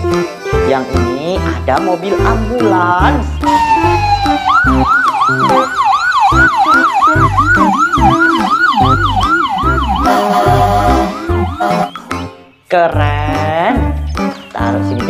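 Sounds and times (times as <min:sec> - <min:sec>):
music with thumping bass beat: 0:00.0 - 0:12.3
electronic siren yelping: 0:03.4 - 0:12.2.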